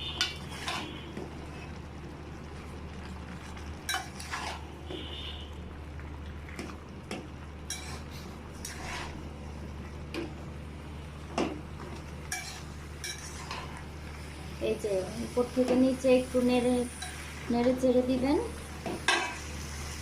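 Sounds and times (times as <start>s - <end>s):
utensil scraping a pot: 3.9s - 4.7s, 7.7s - 9.2s.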